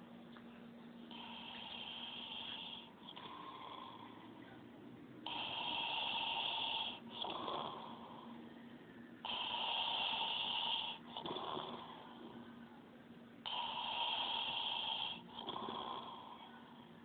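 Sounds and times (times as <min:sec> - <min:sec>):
quiet breathing: 0:00.0 - 0:17.0
man snoring: 0:01.1 - 0:04.4, 0:05.2 - 0:08.4, 0:09.2 - 0:12.4, 0:13.5 - 0:16.6.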